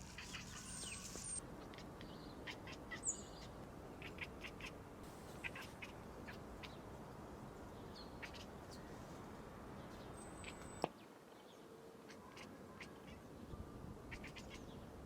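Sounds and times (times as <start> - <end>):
cat chirping: 0.0 - 1.8, 5.4 - 6.8, 14.1 - 14.6
steady hiss: 5.0 - 6.1.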